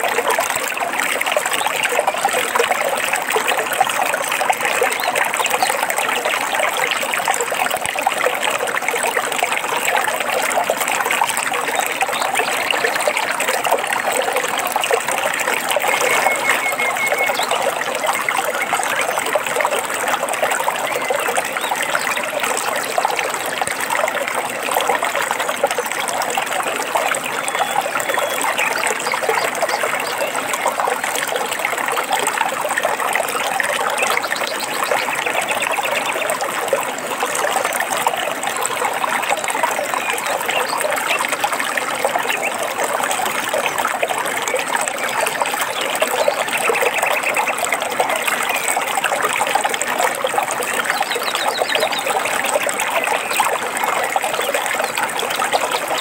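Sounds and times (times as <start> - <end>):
stream water trickling over rocks: 0.0 - 56.0
bird trills: 15.8 - 17.6.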